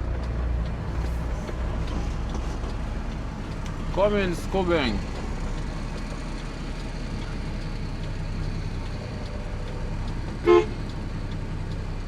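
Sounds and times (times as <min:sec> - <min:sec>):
truck engine running: 0:00.0 - 0:12.0
truck horn toot: 0:10.4 - 0:10.8.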